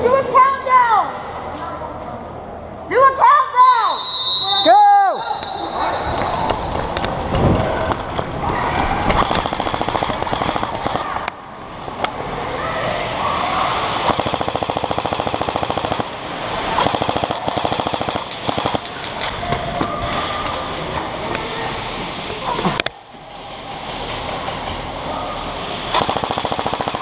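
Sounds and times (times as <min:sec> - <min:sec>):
airsoft guns firing bursts: 0:09.2 - 0:11.1, 0:14.1 - 0:19.3, 0:25.9 - 0:27.0.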